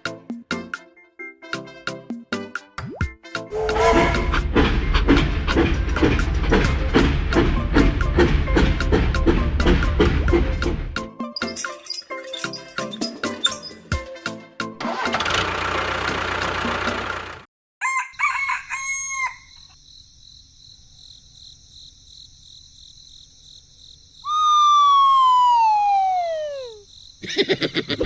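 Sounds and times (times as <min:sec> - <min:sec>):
short pitched notes: 0:03.5 - 0:04.6
rooster crowing: 0:17.8 - 0:19.7.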